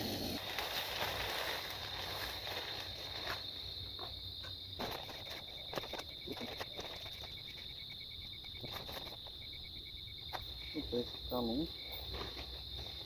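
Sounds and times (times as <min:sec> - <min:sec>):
insects trilling: 0:00.0 - 0:13.0
rapidly pulsing chirp: 0:05.0 - 0:10.8.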